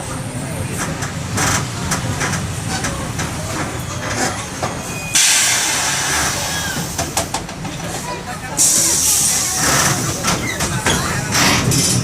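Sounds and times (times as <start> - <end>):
bus diesel engine running: 0.0 - 12.0
compressed air hiss: 5.2 - 7.2.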